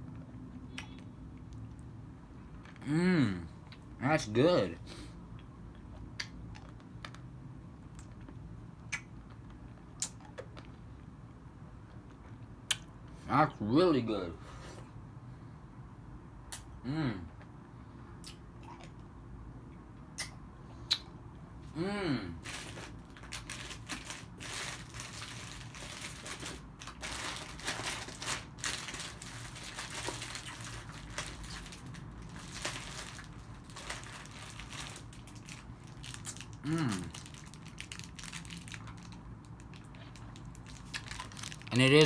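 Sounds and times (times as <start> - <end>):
person humming: 2.8 - 3.5, 21.8 - 22.4, 36.6 - 37.1
crunching hard candy: 21.8 - 42.0
plastic wrapper crinkling: 22.4 - 42.0.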